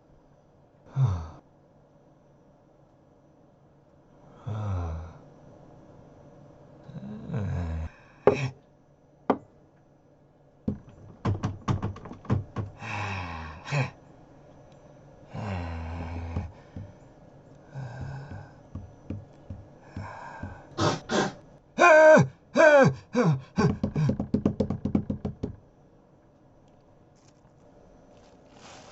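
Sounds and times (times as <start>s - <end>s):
breaths and grunts: 0.9s - 1.4s, 4.3s - 5.3s, 6.9s - 8.6s, 12.7s - 14.0s, 15.3s - 17.0s, 17.6s - 24.2s
sharp knocks and thumps: 10.7s - 12.8s, 18.0s - 20.8s, 23.6s - 25.6s
person crying out: 20.0s - 24.1s.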